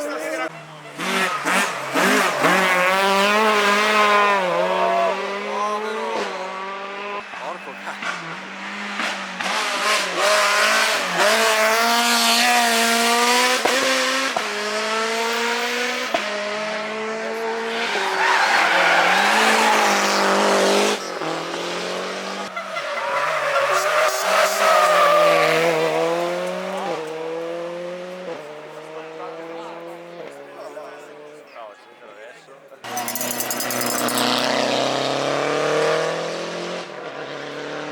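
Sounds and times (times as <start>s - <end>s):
rally car engine revving: 0.0s - 31.5s, 32.8s - 37.9s
tyres squealing: 17.3s - 21.3s, 32.9s - 34.6s.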